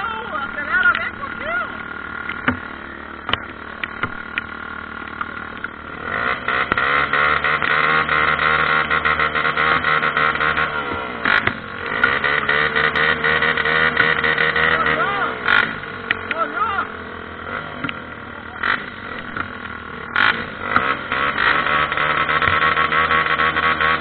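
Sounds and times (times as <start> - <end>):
dirt bike engine revving: 0.0 - 24.0.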